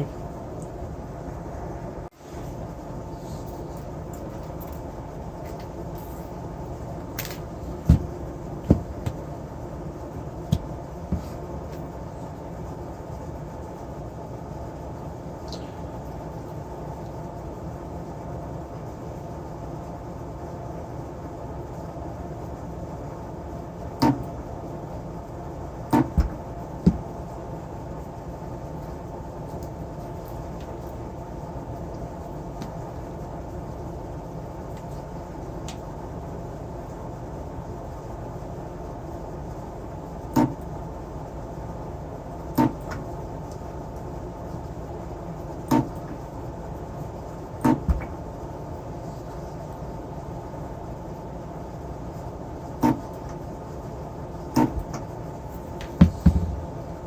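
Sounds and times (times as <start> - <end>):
steady low hum: 0.0 - 57.0
tools clicking and knocking: 7.2 - 9.2.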